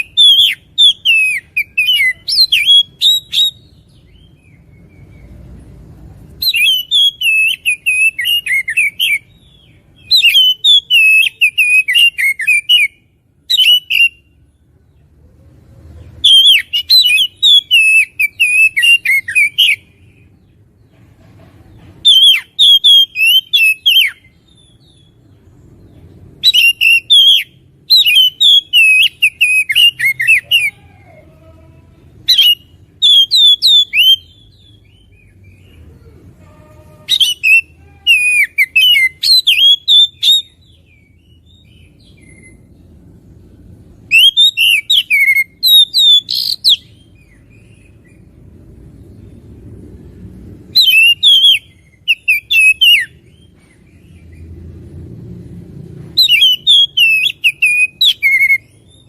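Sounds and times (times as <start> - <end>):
bird singing whistles and chirps: 0.0 - 5.5, 6.4 - 14.4, 16.2 - 20.3, 22.0 - 30.8, 32.2 - 35.8, 37.0 - 42.8, 44.0 - 48.3, 50.7 - 54.5, 56.1 - 59.0.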